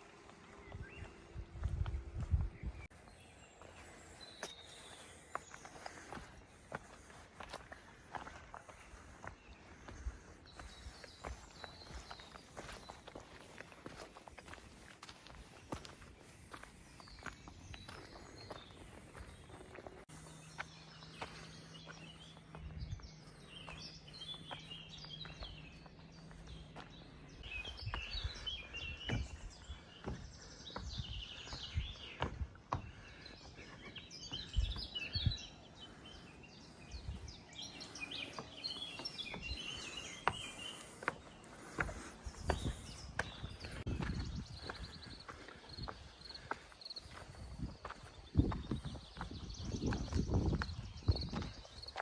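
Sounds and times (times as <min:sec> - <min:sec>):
footsteps on rocky trail: 0:00.0 - 0:52.0
small birds chirping: 0:00.0 - 0:52.0.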